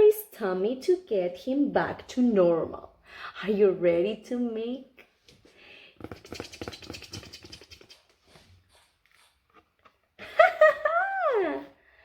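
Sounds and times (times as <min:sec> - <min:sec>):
fingers scratching paper page: 0:06.0 - 0:08.4.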